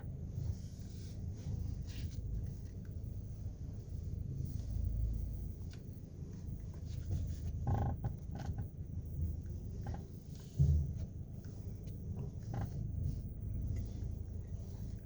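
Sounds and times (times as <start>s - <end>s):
steering clicking and creaking: 6.6s - 15.0s
dull thump: 10.5s - 11.1s.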